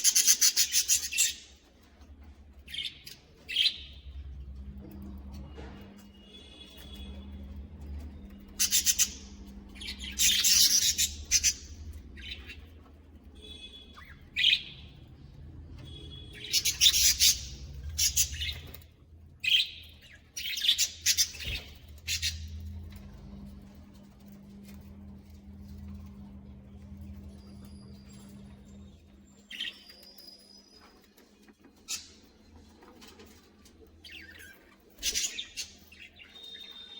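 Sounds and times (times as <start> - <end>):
budgerigars chirping and chattering: 0.0 - 4.2, 6.3 - 15.2, 15.8 - 22.8, 34.0 - 36.9
steady low hum: 21.0 - 29.2.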